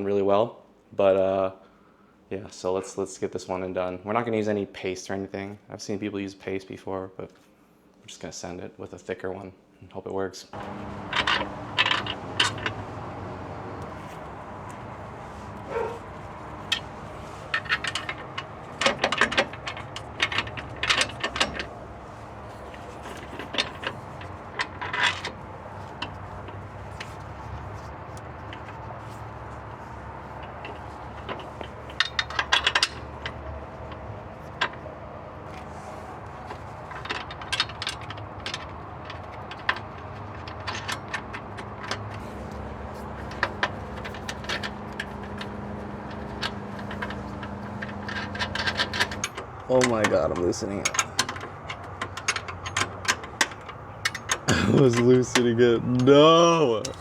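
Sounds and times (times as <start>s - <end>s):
metal clinks: 10.6s - 27.5s
steady low hum: 10.6s - 36.5s.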